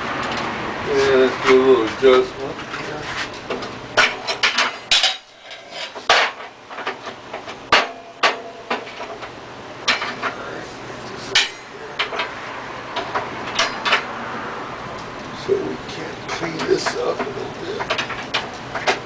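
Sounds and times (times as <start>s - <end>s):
metallic knocks on iron post: 3.5s - 10.4s, 13.0s - 14.1s.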